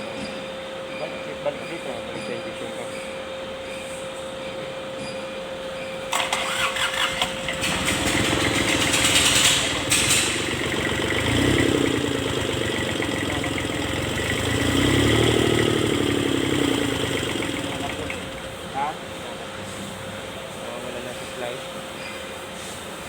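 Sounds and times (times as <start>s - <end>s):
diesel engine cranking and running: 6.1s - 21.5s
engine revving: 6.2s - 19.1s.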